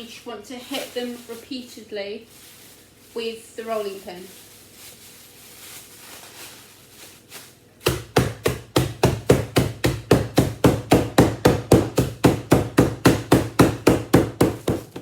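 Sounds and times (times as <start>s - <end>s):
rolling pin beating biscuits in bag: 6.0s - 15.0s.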